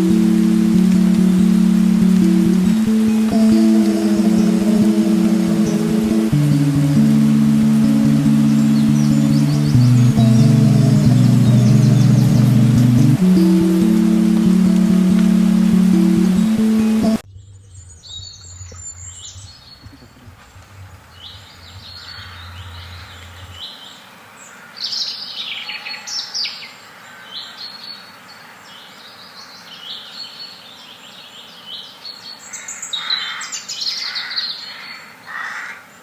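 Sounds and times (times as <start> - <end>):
faint low hum: 0.0 - 23.6.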